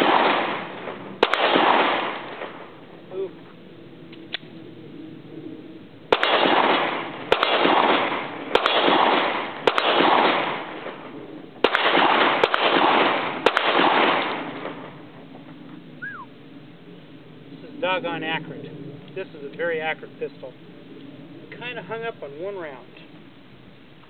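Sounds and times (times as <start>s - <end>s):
pistol shots with echo: 0.0s - 2.7s, 6.1s - 14.9s.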